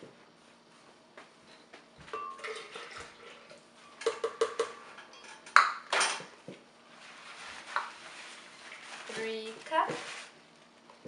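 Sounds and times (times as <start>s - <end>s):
kitchenware clinking: 2.0s - 6.4s.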